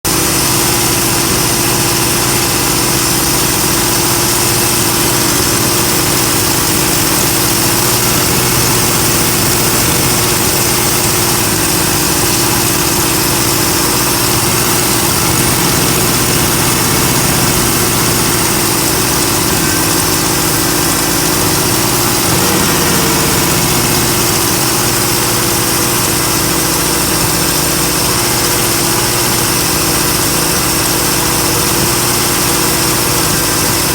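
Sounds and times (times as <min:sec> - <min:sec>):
engine idling: 0:00.0 - 0:33.9.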